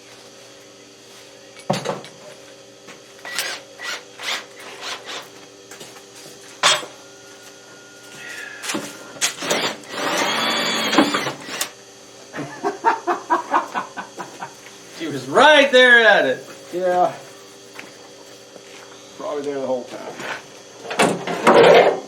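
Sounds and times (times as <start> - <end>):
power drill running: 3.2 - 5.3, 8.7 - 11.8.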